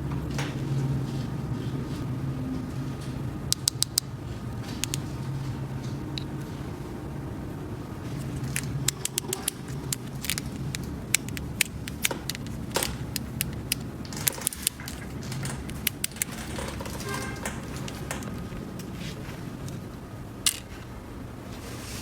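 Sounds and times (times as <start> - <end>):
steady low hum: 0.0 - 22.0
plastic toy pieces clicking: 4.8 - 5.0, 8.5 - 17.0.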